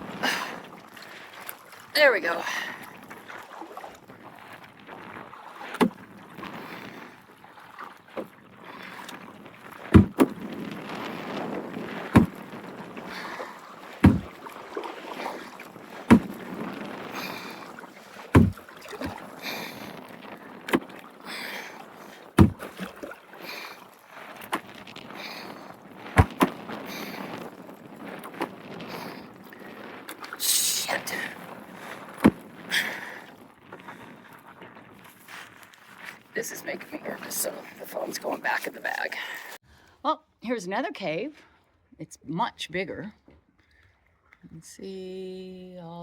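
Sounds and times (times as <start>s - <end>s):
water swishing: 0.0s - 39.9s
paddle stroke knocks: 9.8s - 10.4s, 12.0s - 12.6s, 14.0s - 17.1s, 18.2s - 19.2s, 22.4s - 22.9s, 26.1s - 26.6s.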